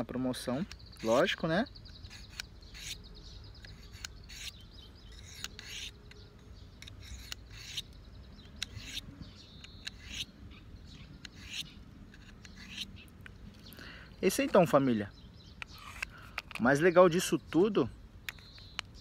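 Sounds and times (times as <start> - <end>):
knife scraping on sharpening stone: 2.0 - 3.0, 3.6 - 6.0, 6.8 - 7.9, 8.6 - 9.1, 9.8 - 10.3, 11.2 - 12.9.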